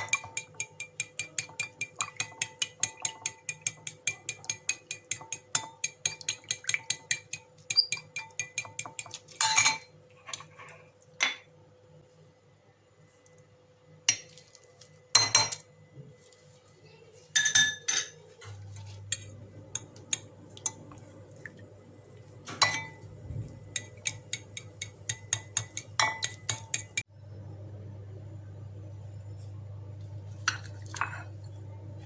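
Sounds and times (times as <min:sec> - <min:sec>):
metal utensils clinking on dishes: 0:00.0 - 0:10.5
low steady hum: 0:00.0 - 0:32.0.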